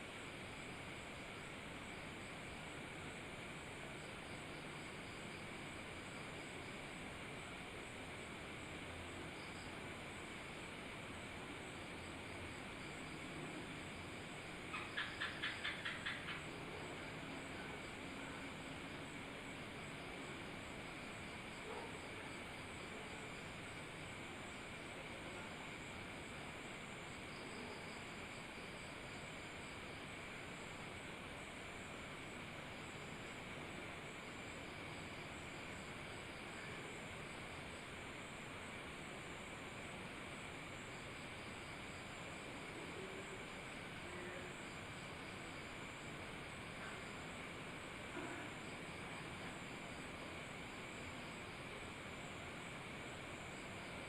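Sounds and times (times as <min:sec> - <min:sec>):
background hiss: 0:00.0 - 0:54.0
faint high steady tone: 0:00.0 - 0:54.0
animal chirps: 0:14.7 - 0:16.5.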